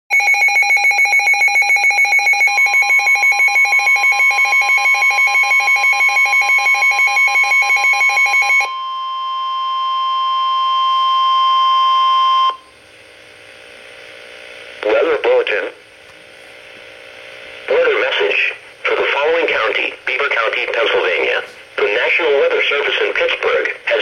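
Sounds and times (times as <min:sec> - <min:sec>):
rapid pulsing alarm beep: 0:00.1 - 0:12.7
steady warning tone: 0:00.1 - 0:12.8.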